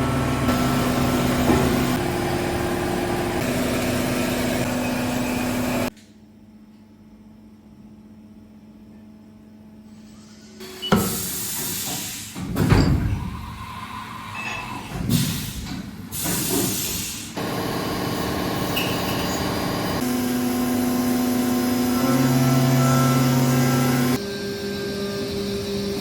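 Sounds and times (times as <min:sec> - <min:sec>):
milling machine running with tones: 0:00.0 - 0:05.9, 0:17.4 - 0:26.0.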